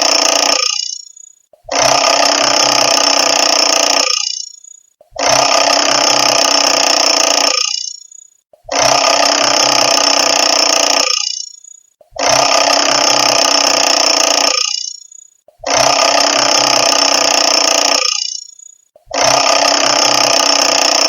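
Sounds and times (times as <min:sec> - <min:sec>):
alarm clock bell ringing: 0:00.0 - 0:01.4, 0:03.0 - 0:04.9, 0:06.5 - 0:08.4, 0:10.4 - 0:12.0, 0:13.6 - 0:15.4, 0:16.9 - 0:18.9.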